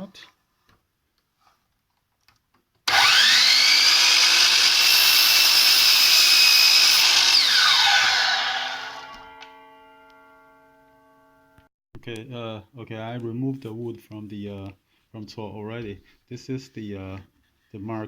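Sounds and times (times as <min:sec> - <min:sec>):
mitre saw cutting wood: 0:02.9 - 0:09.4.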